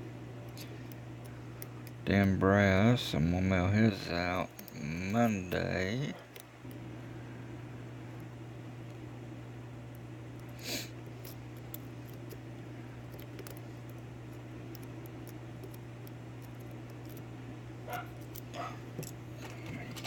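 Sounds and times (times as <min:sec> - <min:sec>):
steady low hum: 0:00.0 - 0:20.0
lock picking metallic ticks: 0:13.1 - 0:17.2.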